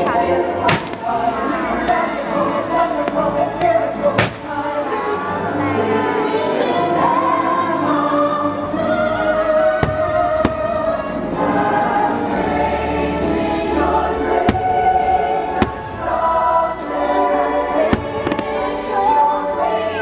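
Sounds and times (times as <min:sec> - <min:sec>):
music with choir singing: 0:00.0 - 0:20.0
fireworks bursting: 0:00.6 - 0:05.4, 0:09.7 - 0:11.6, 0:13.4 - 0:19.2.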